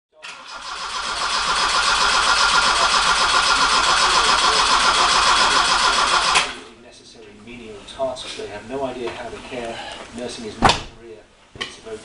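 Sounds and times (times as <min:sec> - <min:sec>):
car engine starting and running: 0:00.2 - 0:06.7.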